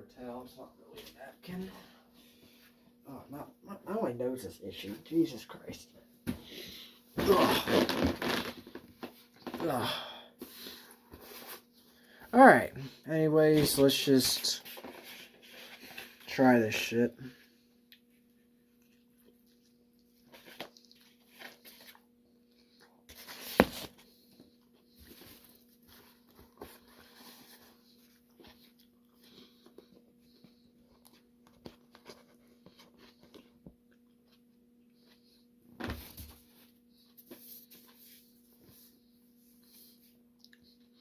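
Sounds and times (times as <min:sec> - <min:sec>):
faint steady hum: 0:00.0 - 0:41.0
man chewing: 0:17.9 - 0:23.0, 0:28.1 - 0:34.2.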